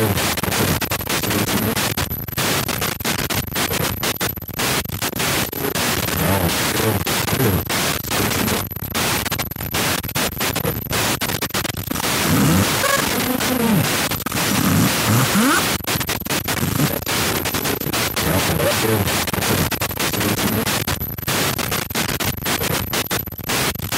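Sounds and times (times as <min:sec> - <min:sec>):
faint garbled radio voice: 0:00.0 - 0:01.9, 0:05.4 - 0:08.6, 0:12.0 - 0:15.7, 0:16.7 - 0:20.8
radio static hiss: 0:00.0 - 0:23.9.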